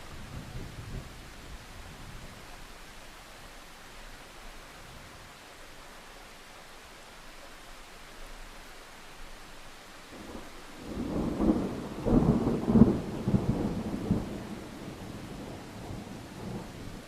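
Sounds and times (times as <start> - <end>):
steady rain hiss: 0.0 - 17.0
thunder rumbling and cracking: 10.2 - 17.0.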